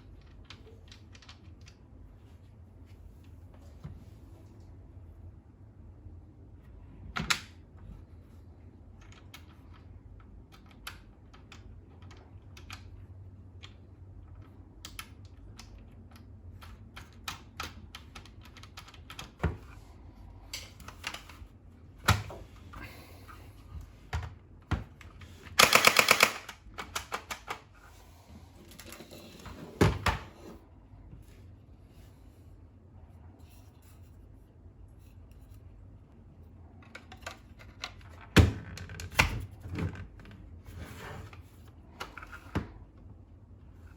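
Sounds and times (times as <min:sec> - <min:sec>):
rapid toy clicking: 0:25.6 - 0:26.6
plastic toy clicks and knocks: 0:25.6 - 0:27.6.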